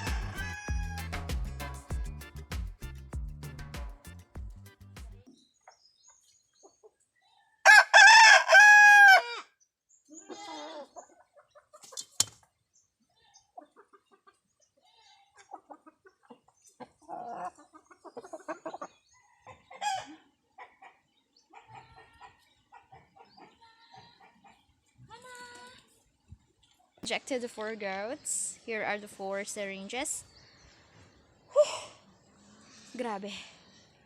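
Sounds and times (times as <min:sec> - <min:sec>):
rooster crowing: 0:00.0 - 0:01.5, 0:07.6 - 0:09.5.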